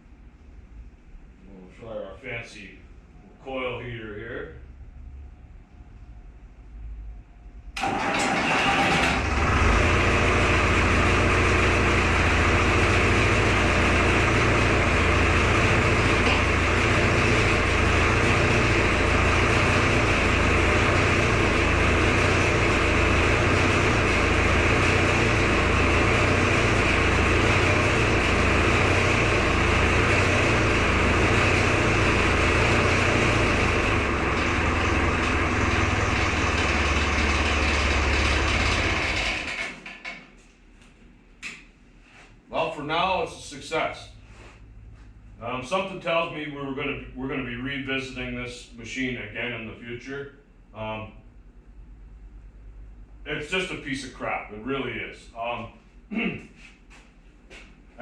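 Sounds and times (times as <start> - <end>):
diesel engine running: 6.6 - 39.8.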